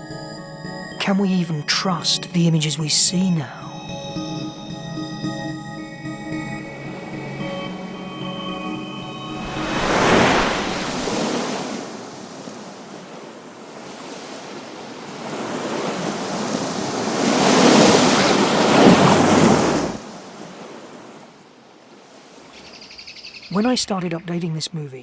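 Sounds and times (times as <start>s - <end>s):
ocean waves crashing: 6.9s - 22.6s, 23.5s - 25.0s.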